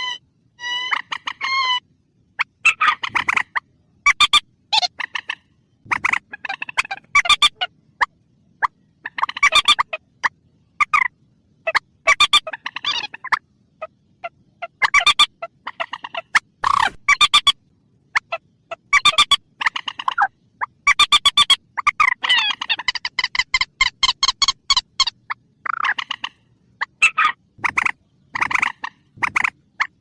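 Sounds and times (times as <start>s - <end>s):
waterbird stuttering clucking: 2.4s - 5.1s, 18.2s - 30.0s.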